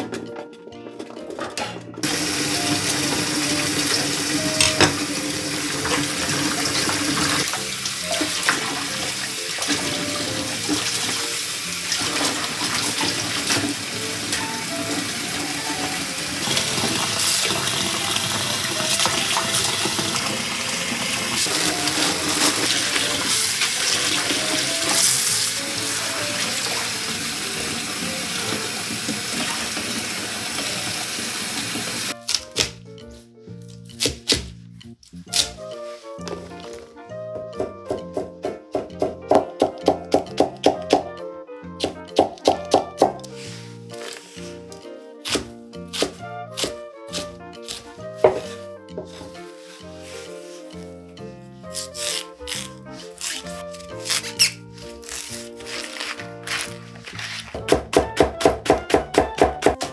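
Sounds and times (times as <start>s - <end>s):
tap water running into sink: 2.0s - 32.2s.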